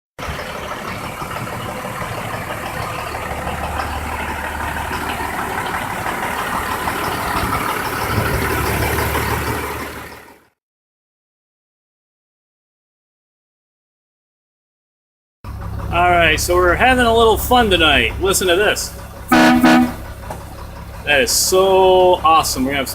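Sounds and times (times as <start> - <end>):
truck engine idling: 0.2 - 10.6, 15.5 - 22.9.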